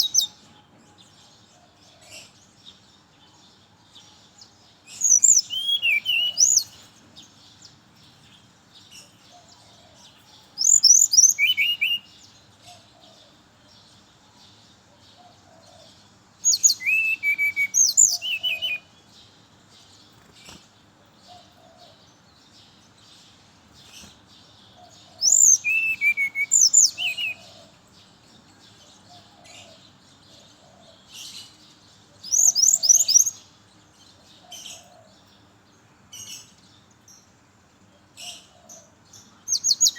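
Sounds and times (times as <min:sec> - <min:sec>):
bird singing whistled notes: 0:00.0 - 0:00.4, 0:04.8 - 0:07.0, 0:10.5 - 0:12.3, 0:16.4 - 0:18.9, 0:25.2 - 0:27.6, 0:32.2 - 0:33.5, 0:39.5 - 0:39.9.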